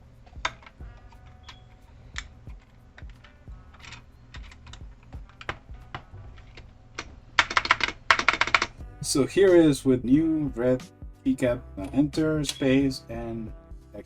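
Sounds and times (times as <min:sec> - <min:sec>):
mechanical keyboard keys clacking: 0:00.4 - 0:08.7.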